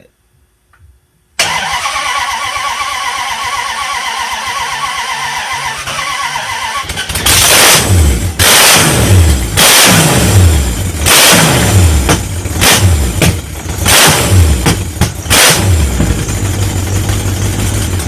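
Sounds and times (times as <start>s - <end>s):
engine cranking with starter whine: 1.4s - 18.0s
loud engine running and revving: 3.9s - 18.0s.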